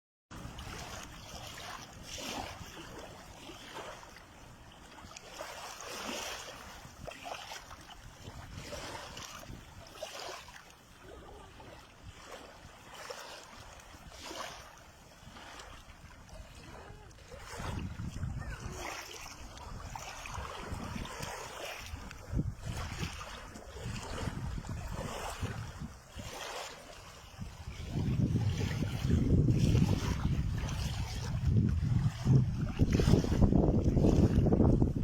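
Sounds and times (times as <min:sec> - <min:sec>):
lake water splashing and lapping: 0:00.3 - 0:35.0
low wind rumble: 0:27.4 - 0:35.0.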